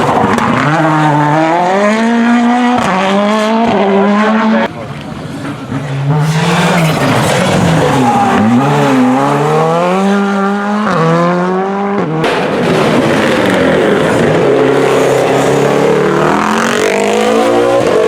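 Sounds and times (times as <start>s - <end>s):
car passing rush: 0.0s - 18.0s
rally car engine at high revs: 0.0s - 18.0s.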